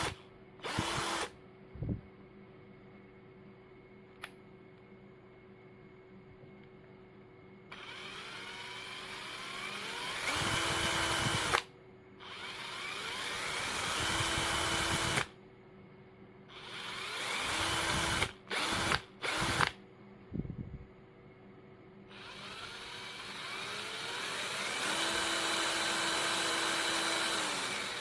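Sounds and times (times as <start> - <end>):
cordless drill motor running: 0.0 - 1.4, 7.7 - 15.3, 16.5 - 19.8, 22.1 - 28.0.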